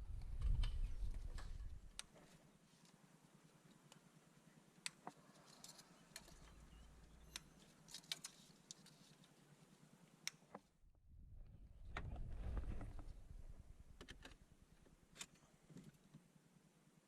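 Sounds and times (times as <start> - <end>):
low faint hum: 9.1 - 17.0.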